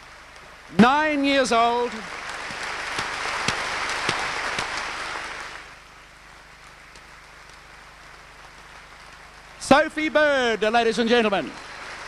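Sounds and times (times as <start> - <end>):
audience applauding: 0.0 - 12.0
low steady hiss: 0.0 - 12.0.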